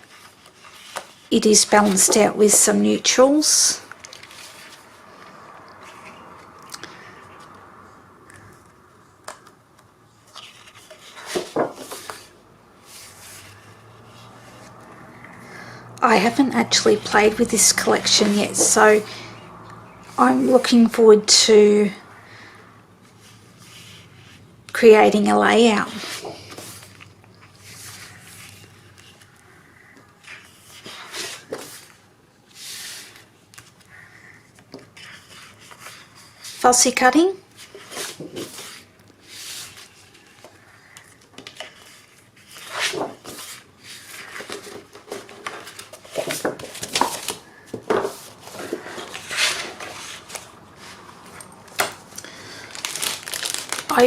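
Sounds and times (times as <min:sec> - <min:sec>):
paper rustling and sliding: 0:00.0 - 0:06.2, 0:10.2 - 0:15.3, 0:16.2 - 0:19.3, 0:25.7 - 0:29.4, 0:30.2 - 0:34.3, 0:34.9 - 0:36.6, 0:37.5 - 0:54.0.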